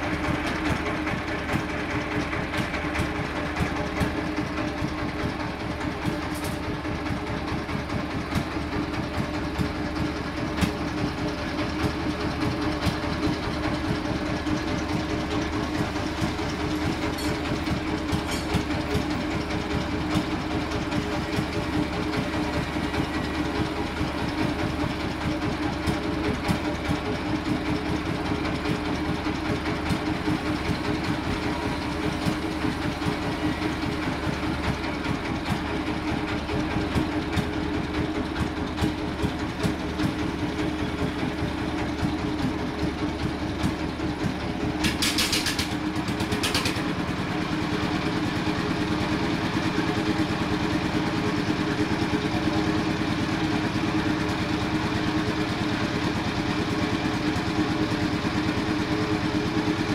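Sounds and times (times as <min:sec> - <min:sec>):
bandsaw humming and rattling: 0:15.6 - 0:27.4.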